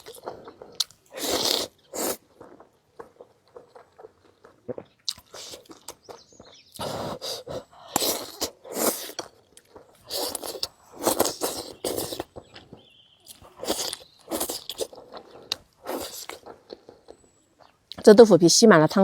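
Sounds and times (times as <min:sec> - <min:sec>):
person chewing food: 0:00.0 - 0:18.0.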